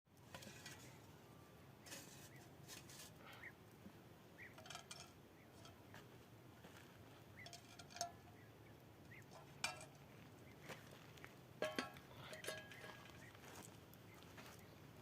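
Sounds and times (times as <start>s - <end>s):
metallic clinks of cookware: 11.6s - 13.0s.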